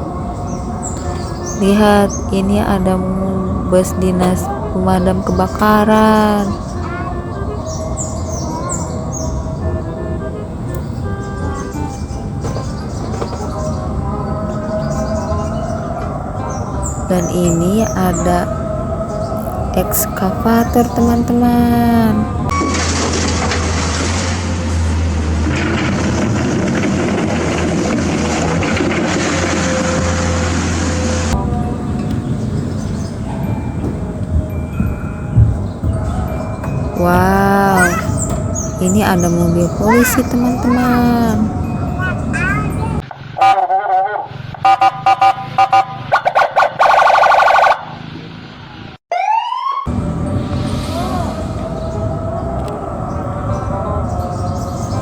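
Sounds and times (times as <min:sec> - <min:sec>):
toy police siren effects: 0:49.1 - 0:49.9.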